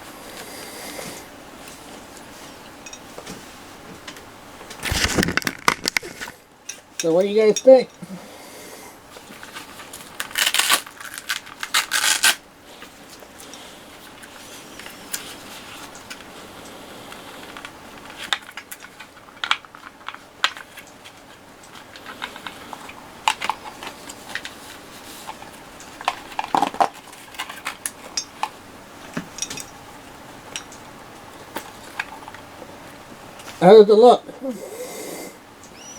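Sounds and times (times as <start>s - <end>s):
handling rubbing and scraping: 0.0s - 33.6s
small hard parts clicking: 4.8s - 8.0s, 9.2s - 12.4s, 17.1s - 24.6s.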